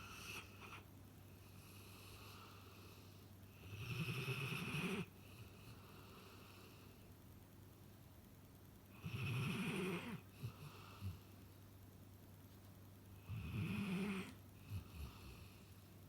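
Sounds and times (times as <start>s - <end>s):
dog snoring: 3.5s - 6.8s, 9.0s - 11.2s, 13.2s - 15.7s.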